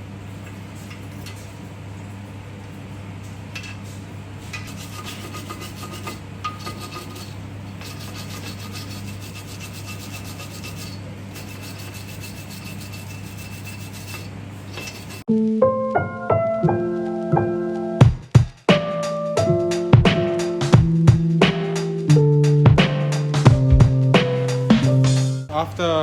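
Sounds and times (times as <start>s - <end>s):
scraping on metal: 3.6s - 15.3s.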